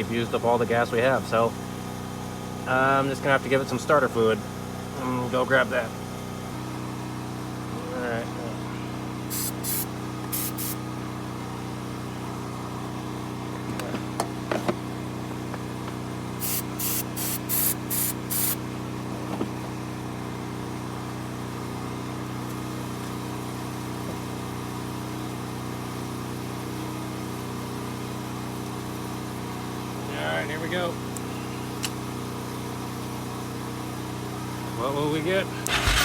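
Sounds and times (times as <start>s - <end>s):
aerosol spray hissing bursts: 9.3s - 10.8s, 16.4s - 18.6s
portable generator humming: 35.5s - 36.0s.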